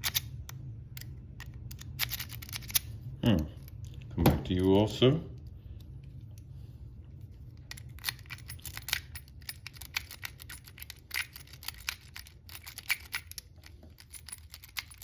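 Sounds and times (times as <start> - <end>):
lock pick clicking and scraping: 0.0 - 0.3, 0.9 - 2.9, 7.7 - 15.0
low steady hum: 0.0 - 15.0.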